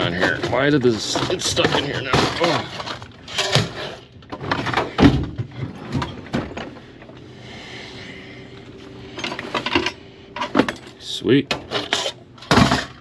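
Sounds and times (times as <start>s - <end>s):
metal drawer knocks and clunks: 0.0s - 6.7s, 9.3s - 13.0s
drawer sliding rasp: 1.1s - 6.5s, 11.6s - 13.0s.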